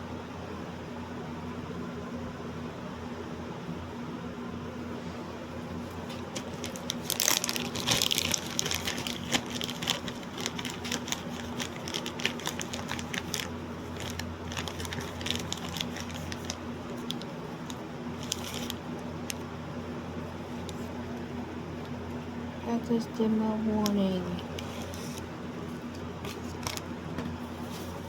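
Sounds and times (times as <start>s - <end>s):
low electrical hum: 0.0s - 28.0s
clicking and crinkling: 5.9s - 19.4s, 25.9s - 27.3s.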